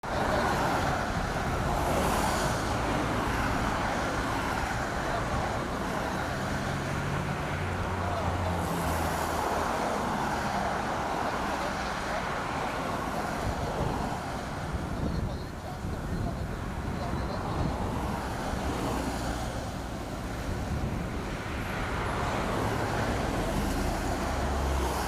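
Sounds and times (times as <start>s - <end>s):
vehicle road and engine noise: 0.0s - 25.0s.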